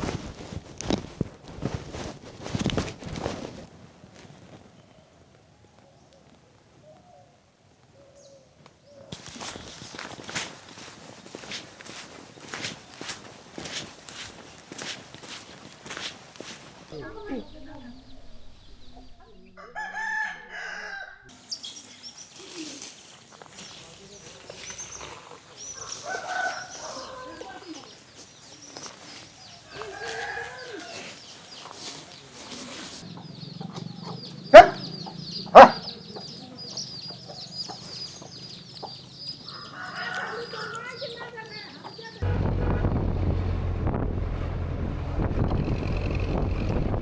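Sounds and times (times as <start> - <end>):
rooster crowing: 19.6 - 21.3, 25.7 - 27.9, 29.5 - 31.3, 39.4 - 41.2.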